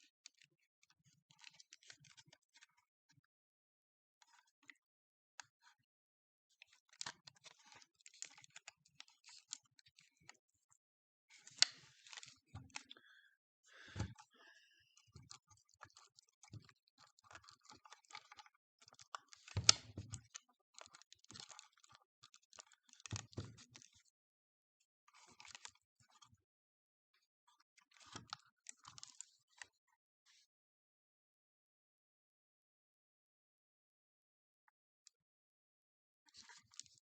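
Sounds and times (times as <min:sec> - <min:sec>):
plastic parts clicking and rattling: 0:15.1 - 0:24.0.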